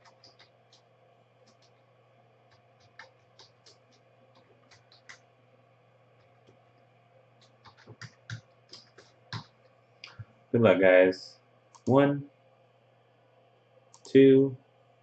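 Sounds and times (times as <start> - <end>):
keyboard and mouse clicks: 0.0 - 0.8, 2.5 - 5.2, 7.4 - 10.2.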